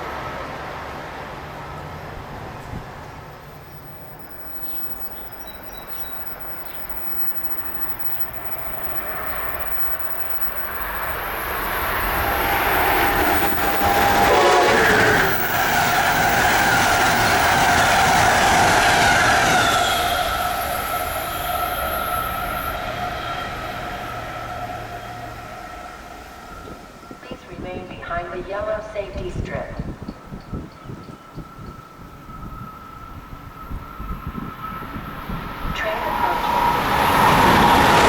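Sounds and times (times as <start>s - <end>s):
wheel and rail noise: 0.0s - 28.0s, 29.2s - 38.0s
train passing at speed: 0.0s - 38.0s
train horn: 11.9s - 27.6s, 35.8s - 38.0s.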